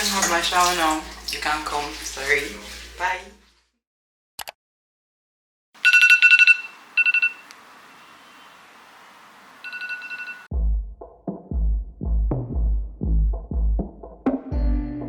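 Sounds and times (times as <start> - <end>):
electronic ringing tone: 5.8 - 7.5, 9.6 - 10.5
music with heavy bass beat: 10.5 - 15.0.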